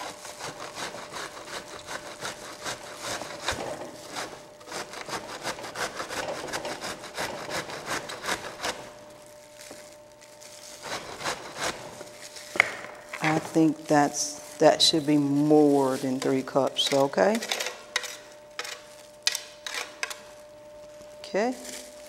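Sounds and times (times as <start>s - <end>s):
cauliflower being grated: 0.0s - 12.5s, 13.2s - 20.2s, 21.5s - 22.0s.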